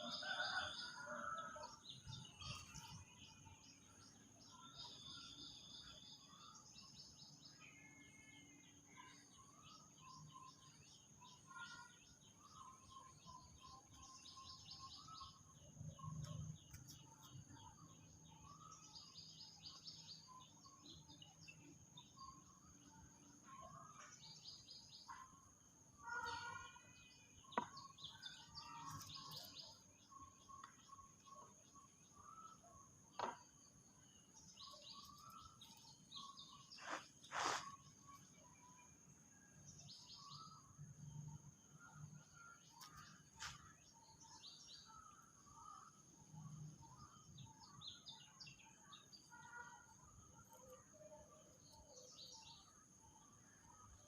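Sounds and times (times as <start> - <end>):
small birds chirping: 0.0 - 54.0
birds chirping and calling: 34.2 - 38.0.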